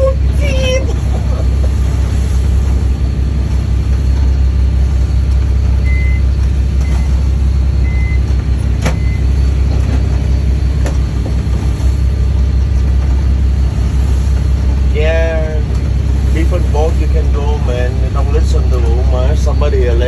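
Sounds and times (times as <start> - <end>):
boat engine drone: 0.0 - 20.0.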